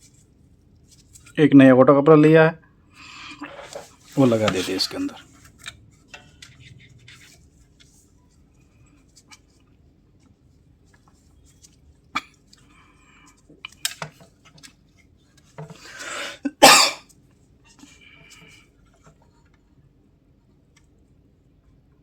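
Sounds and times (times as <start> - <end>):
person breathing in: 15.8 - 16.5
person coughing loudly: 16.4 - 17.0.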